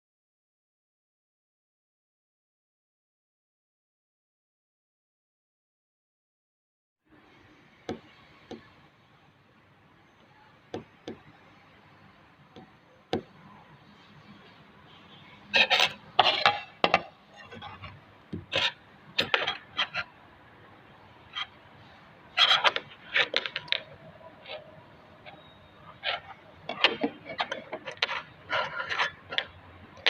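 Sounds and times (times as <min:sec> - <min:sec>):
rubbing and scraping of tools: 0:12.6 - 0:20.2, 0:21.2 - 0:30.0.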